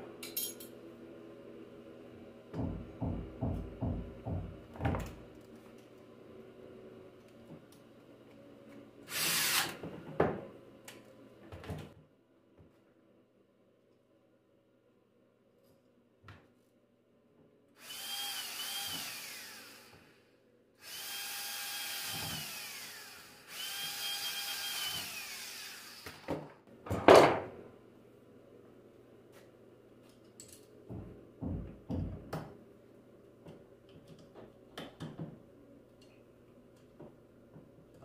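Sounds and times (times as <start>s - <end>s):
power drill whining: 9.1s - 9.8s, 17.8s - 26.4s.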